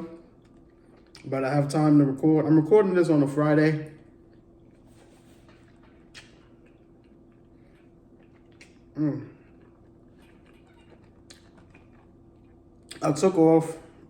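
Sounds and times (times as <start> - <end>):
steady low hum: 0.0 - 14.0
mouth clicks and chewing: 0.3 - 1.4, 4.0 - 13.2.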